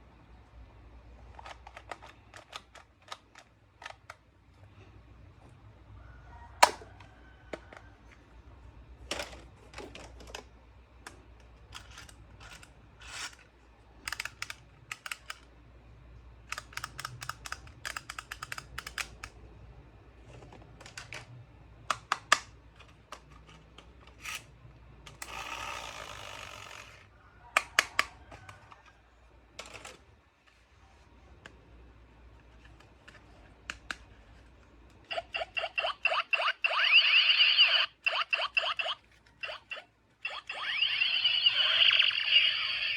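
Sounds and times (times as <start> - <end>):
plastic toys clicking: 1.2 - 4.2, 11.7 - 15.5, 16.4 - 19.4, 35.1 - 42.9.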